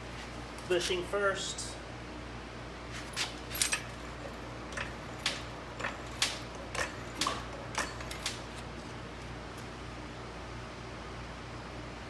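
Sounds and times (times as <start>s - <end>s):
steady low hum: 0.0s - 12.0s
metallic ticking scrapes: 3.1s - 9.3s.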